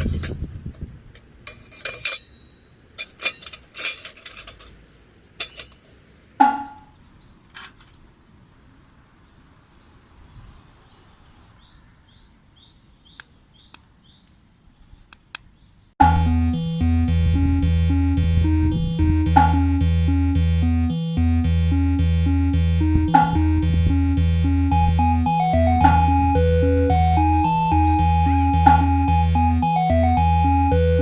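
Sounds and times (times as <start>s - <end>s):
metal clinks and rattles: 1.5s - 4.8s
small birds chirping: 9.3s - 16.0s.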